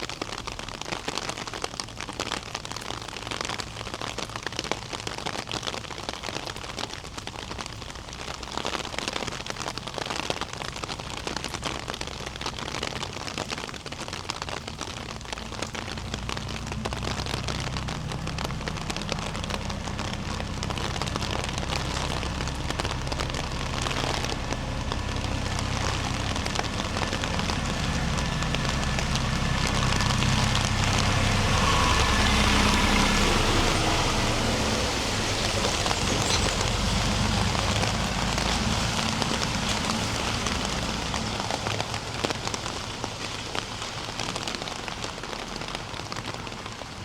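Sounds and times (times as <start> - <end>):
rain on hard surfaces: 0.0 - 47.0
vehicle engine approaching: 11.1 - 44.9.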